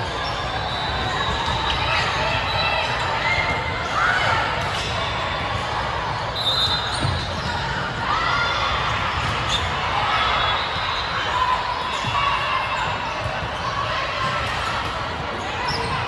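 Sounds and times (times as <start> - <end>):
voices in hall: 0.0 - 16.0
shoes squeaking on court floor: 6.4 - 7.7, 14.8 - 16.0.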